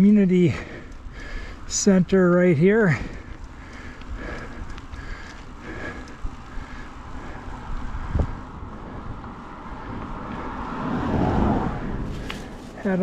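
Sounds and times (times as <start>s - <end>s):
wind rushing over microphone: 6.1s - 13.0s.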